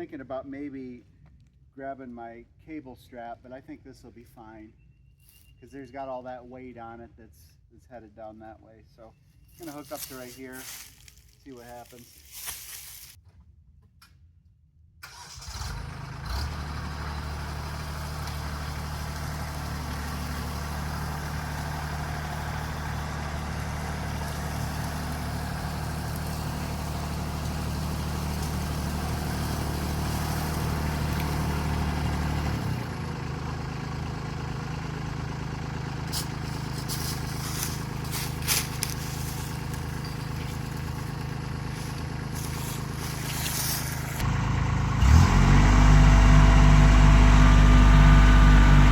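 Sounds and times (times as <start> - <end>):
tractor diesel engine under load: 15.0 - 48.9.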